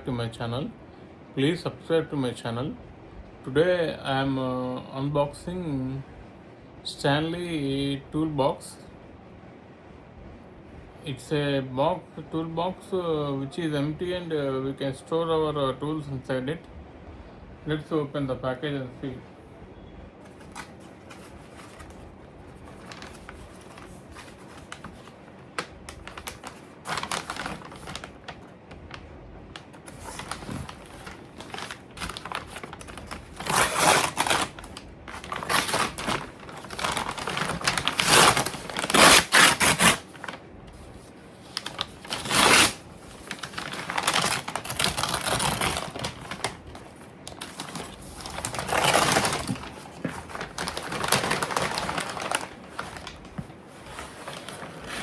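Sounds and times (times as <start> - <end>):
packaging rustling and tearing: 20.3 - 29.0, 29.6 - 55.0.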